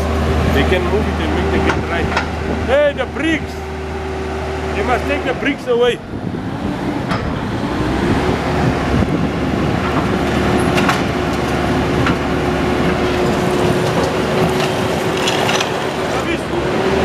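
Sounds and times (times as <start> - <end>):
demolition machine engine whining: 0.0 - 17.0
metallic knocks and clanks: 1.6 - 2.7, 7.0 - 7.6.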